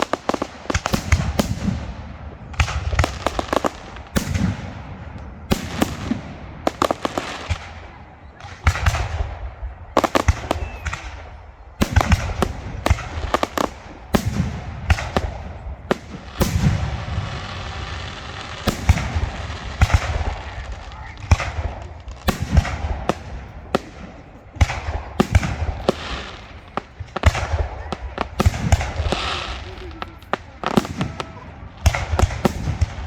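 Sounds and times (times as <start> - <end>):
fireworks bangs and booms: 0.0 - 33.0
fireworks hissing crackle: 10.0 - 33.0.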